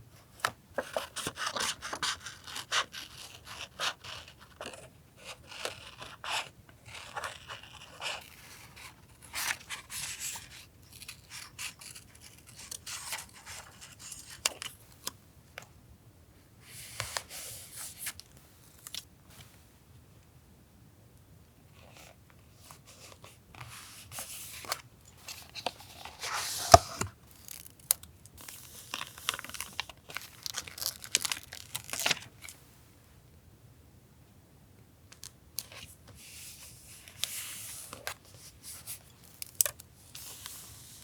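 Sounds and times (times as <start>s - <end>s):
paper rustling and crinkling: 24.0s - 27.7s.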